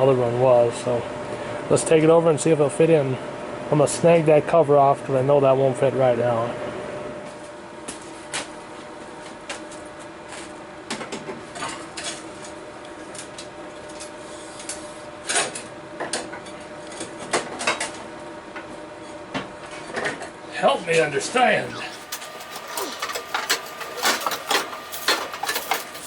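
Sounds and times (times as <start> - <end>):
steady low hum: 21.4 - 26.0
metal tools clinking: 21.7 - 26.0.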